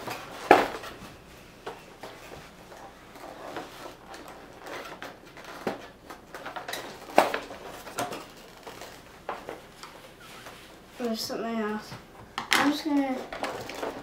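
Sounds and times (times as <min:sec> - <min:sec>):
packaging rustling: 0:02.7 - 0:10.0.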